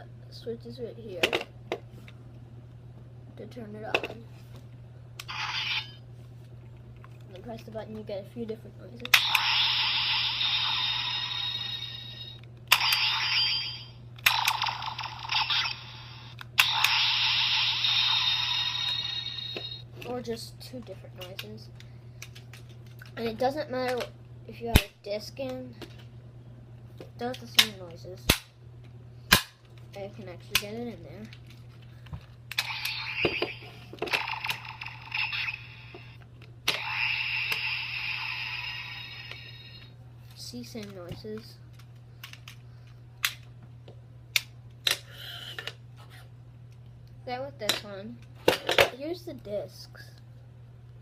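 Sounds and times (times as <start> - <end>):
toy electronic sound effects: 5.3 - 6.0, 9.2 - 19.9, 32.6 - 36.1, 36.7 - 39.9.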